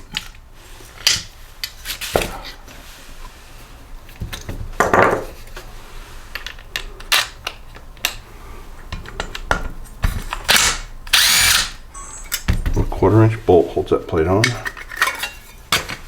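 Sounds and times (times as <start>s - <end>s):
power tool starting: 10.6s - 12.1s
metal tools clinking on engine: 14.5s - 15.6s.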